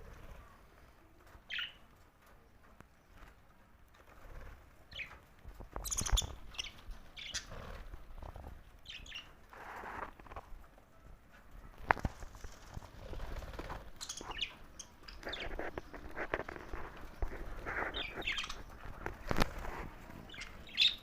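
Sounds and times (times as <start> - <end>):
budgerigars chirping: 17.9 - 18.6.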